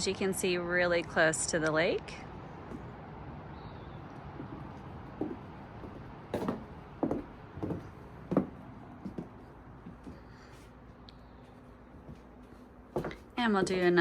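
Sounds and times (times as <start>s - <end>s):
footsteps on wooden boards: 4.3s - 10.2s, 12.0s - 13.9s.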